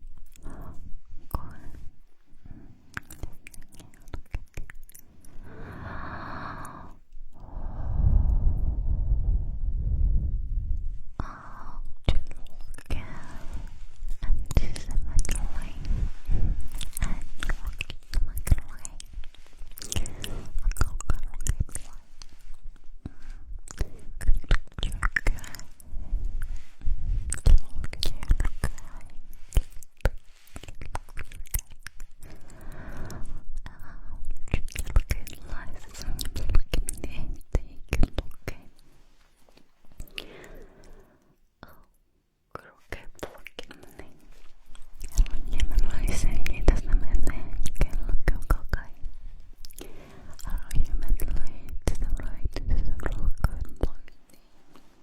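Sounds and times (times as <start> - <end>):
lip and tongue clicks: 2.9 - 5.4, 23.6 - 25.6, 27.3 - 32.4, 34.4 - 38.3
wet mouth clicks and smacks: 2.9 - 5.4, 16.7 - 22.6, 23.6 - 25.6, 27.2 - 32.3, 34.4 - 38.9, 42.6 - 49.0, 49.6 - 51.4
breathy hiss: 5.1 - 8.6, 39.9 - 41.4
low rumble: 5.2 - 21.8.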